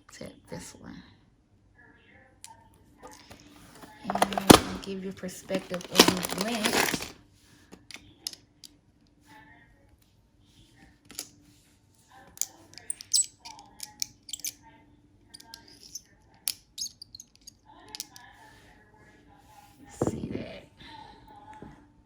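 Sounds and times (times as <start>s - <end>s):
plastic nail tips clicking: 12.4s - 14.6s, 15.4s - 18.2s.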